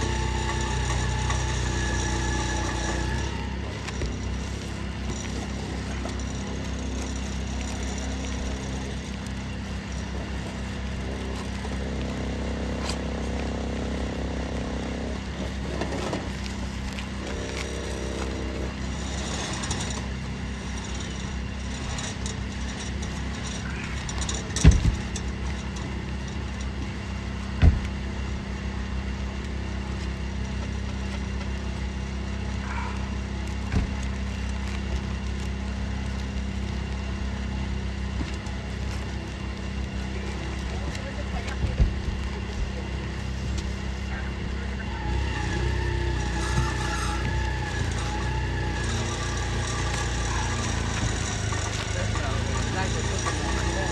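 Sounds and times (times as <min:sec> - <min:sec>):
low engine hum: 0:00.0 - 0:53.9
sharp knocks: 0:24.6 - 0:25.2, 0:27.6 - 0:28.0.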